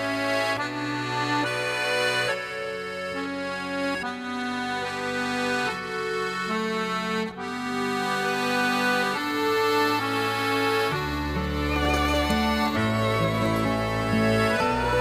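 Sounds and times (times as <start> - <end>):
instrumental background music: 0.0 - 15.0.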